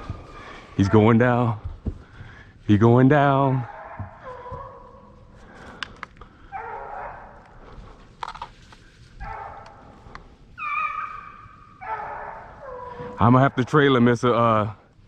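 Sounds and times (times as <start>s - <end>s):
hunting hounds baying: 0.0s - 1.6s, 3.0s - 8.4s, 9.0s - 14.6s.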